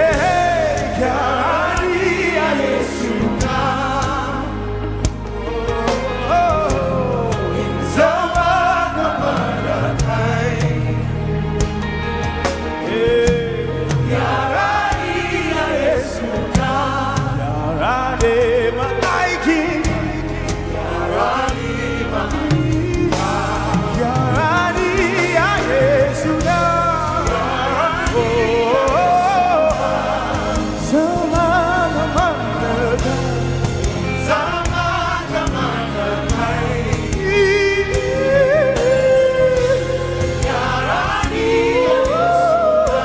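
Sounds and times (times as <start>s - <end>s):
band accompaniment with bass: 0.0s - 43.0s
congregation singing worship song: 0.0s - 43.0s.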